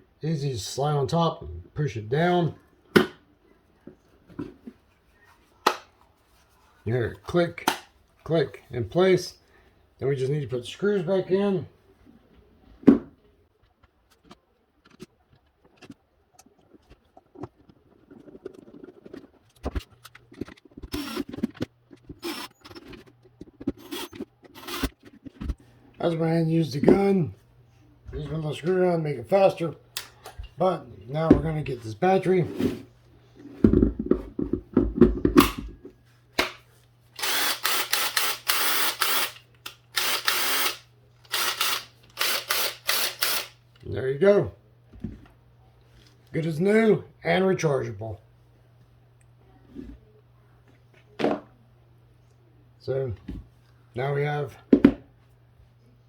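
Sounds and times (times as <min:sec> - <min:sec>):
cordless screw gun driving screws: 0:20.9 - 0:21.5, 0:22.2 - 0:22.6, 0:23.8 - 0:24.9, 0:37.2 - 0:39.4, 0:40.0 - 0:43.6.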